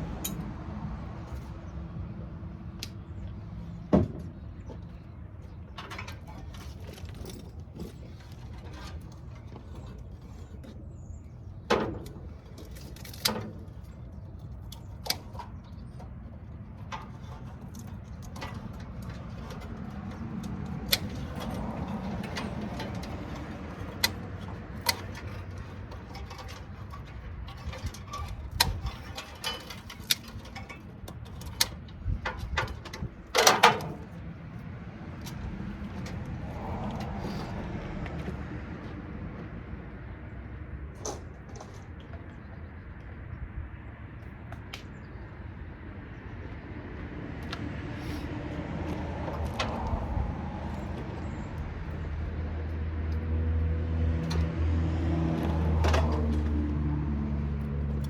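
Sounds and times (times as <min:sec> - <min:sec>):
metal parts and tools clanking: 0:03.8 - 0:38.4, 0:47.4 - 0:53.3, 0:54.2 - 0:56.8.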